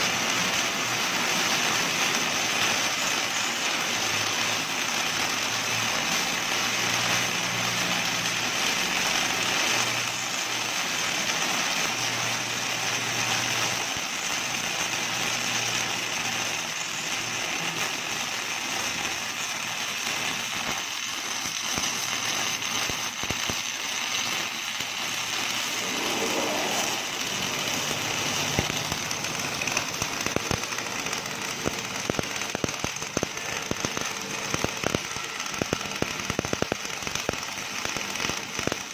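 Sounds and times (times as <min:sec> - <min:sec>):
welding arc crackling hiss: 0:00.0 - 0:38.9
spatter pops: 0:06.1 - 0:38.9
low machine hum: 0:25.6 - 0:32.2.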